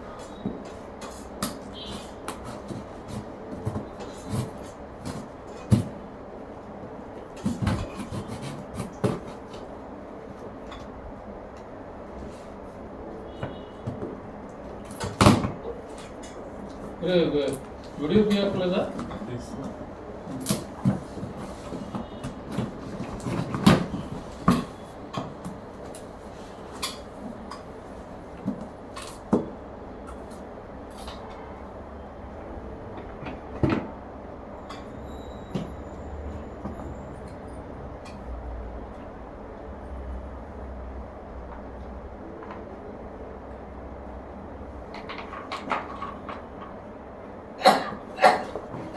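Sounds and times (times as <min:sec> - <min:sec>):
parts knocking and clattering: 0:44.9 - 0:46.9.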